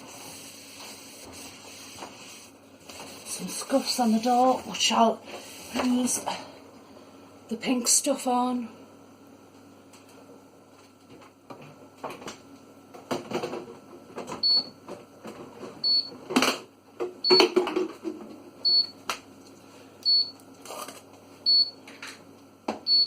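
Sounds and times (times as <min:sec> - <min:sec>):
rubbing and knocking while cleaning: 0:00.0 - 0:04.6
fridge alarm beeping: 0:14.4 - 0:14.8, 0:15.8 - 0:16.2, 0:17.2 - 0:17.6, 0:18.6 - 0:19.0, 0:20.0 - 0:20.4, 0:21.4 - 0:21.8.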